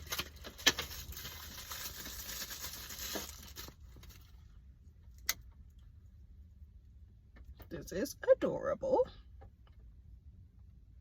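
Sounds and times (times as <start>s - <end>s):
packaging rustling and tearing: 0.0s - 4.3s.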